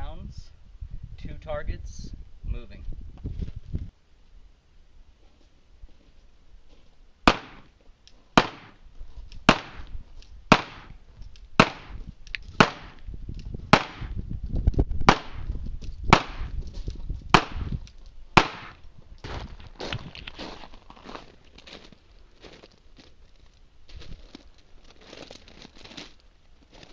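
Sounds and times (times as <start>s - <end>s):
shotgun shots echoing: 7.3s - 7.7s, 8.4s - 8.8s, 9.5s - 9.9s, 10.5s - 11.0s, 11.6s - 12.0s, 12.6s - 13.0s, 13.7s - 14.2s, 15.1s - 15.5s, 16.1s - 16.5s, 18.4s - 18.8s.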